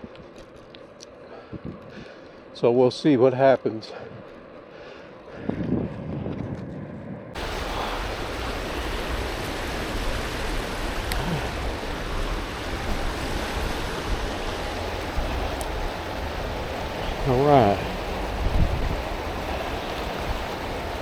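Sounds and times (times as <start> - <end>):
river water rushing: 7.4 - 21.0.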